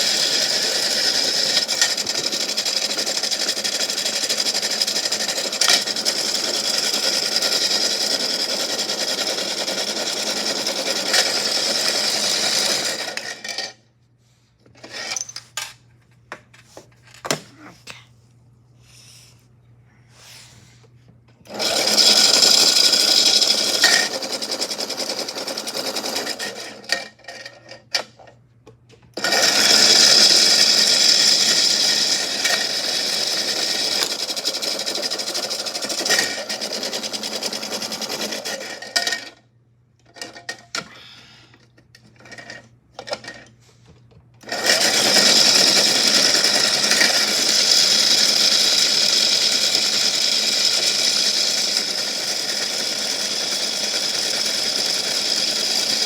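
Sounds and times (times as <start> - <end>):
washing machine motor running: 0.0 - 13.8, 21.4 - 27.6, 29.1 - 39.0, 44.4 - 56.0.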